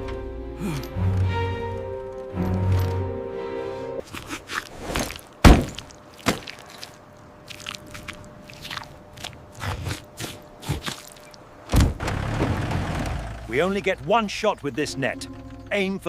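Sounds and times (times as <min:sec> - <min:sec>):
sharp knocks and thuds: 0:04.9 - 0:06.6, 0:11.7 - 0:13.2.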